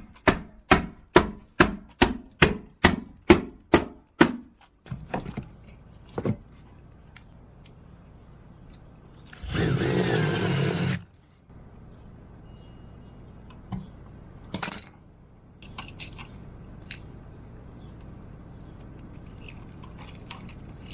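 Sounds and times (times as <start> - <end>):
knocks and clicks of building work: 0.0 - 7.8, 13.4 - 17.1
power tool running: 9.4 - 11.0.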